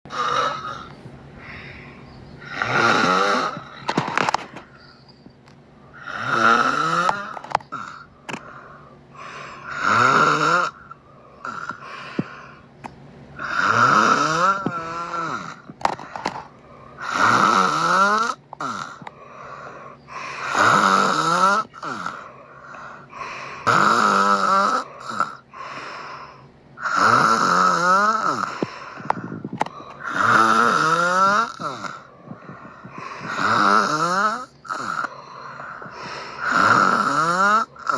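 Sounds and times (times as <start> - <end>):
loud snoring: 0.1 - 0.9, 2.4 - 4.4, 6.0 - 8.1, 9.2 - 11.9, 13.4 - 19.1, 20.1 - 22.3, 23.2 - 25.8, 26.8 - 32.1, 32.8 - 37.9
quiet breathing: 0.1 - 2.7, 7.1 - 9.8, 10.7 - 12.8, 14.6 - 17.3, 18.6 - 20.7, 21.6 - 23.8, 24.8 - 26.9, 28.2 - 30.4, 31.4 - 37.9.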